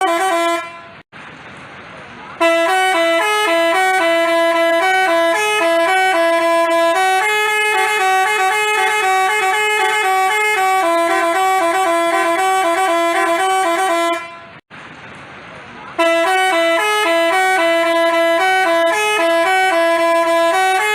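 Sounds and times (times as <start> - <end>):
bus horn melody: 0.0 - 1.0, 2.4 - 14.6, 16.0 - 20.9.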